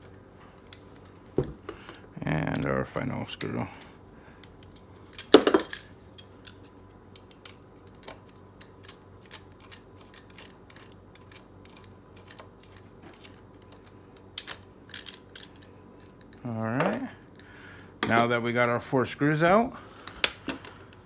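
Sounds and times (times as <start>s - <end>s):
small metal parts handled: 5.1s - 6.7s.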